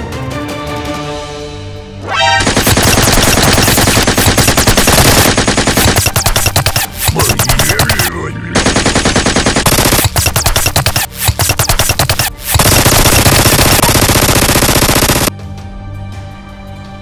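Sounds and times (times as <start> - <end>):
background music: 0.0 - 17.0
rapid automatic gunfire: 2.2 - 15.3.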